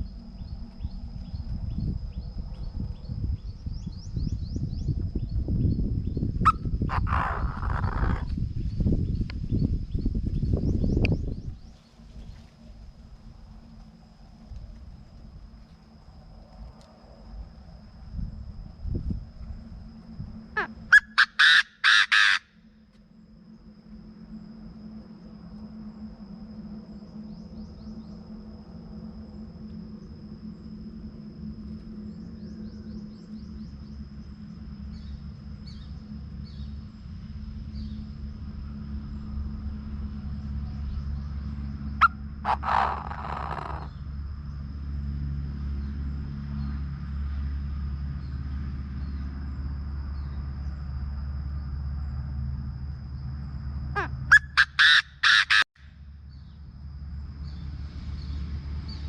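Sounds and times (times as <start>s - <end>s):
high whine: 0.0s - 46.8s
steady low hum: 0.0s - 59.0s
francolin calling: 5.6s - 8.3s, 20.4s - 22.7s, 41.8s - 44.1s, 53.9s - 55.7s.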